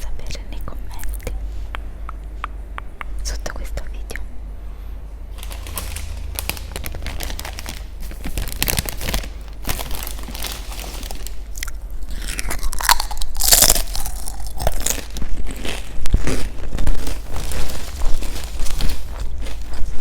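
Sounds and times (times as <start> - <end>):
crunchy food being chewed: 5.4 - 20.0.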